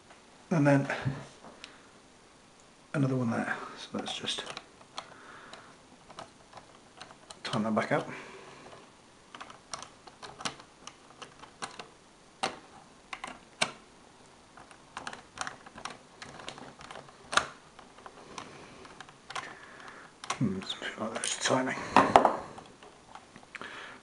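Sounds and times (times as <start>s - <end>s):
screwdriver clicks and taps: 9.3s - 13.8s.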